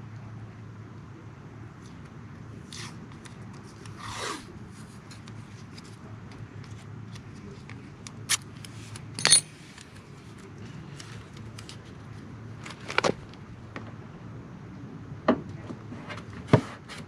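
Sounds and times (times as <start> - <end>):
light clicks and handling noise: 4.7 - 13.9
tools clattering: 9.2 - 9.6.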